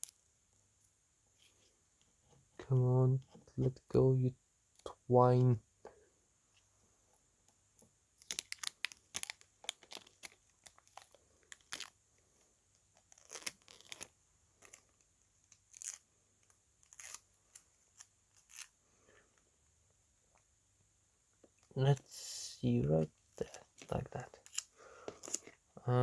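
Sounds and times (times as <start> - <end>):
adhesive tape peeling and tearing: 8.2 - 11.9, 13.0 - 14.8, 15.5 - 16.0, 16.8 - 18.7.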